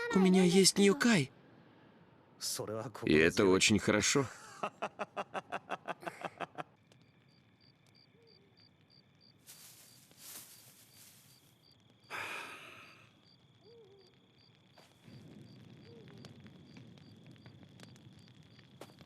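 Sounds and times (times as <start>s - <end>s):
short laugh: 4.3s - 6.7s
faint high chirping: 9.5s - 14.6s.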